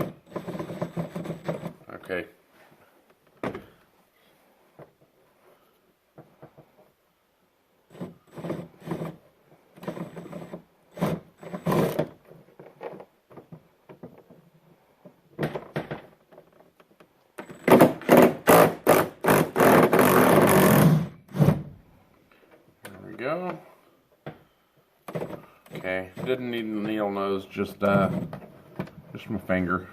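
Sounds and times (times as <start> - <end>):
impact wrench rattling: 0.0 - 1.8
tools scraping and knocking: 27.8 - 29.0.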